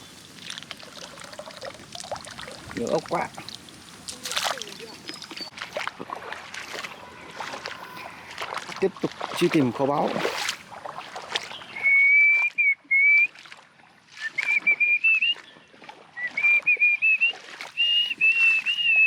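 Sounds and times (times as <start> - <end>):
small water splashes: 0.0 - 19.0
person whistling a tune: 11.8 - 13.3, 14.2 - 15.4, 16.2 - 19.0.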